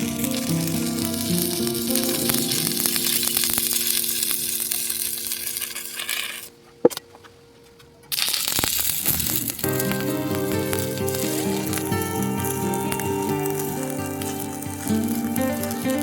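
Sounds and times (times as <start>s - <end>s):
background music: 0.0s - 4.4s, 9.6s - 16.0s
cooking sizzle and crackle: 0.0s - 6.5s, 8.1s - 16.0s.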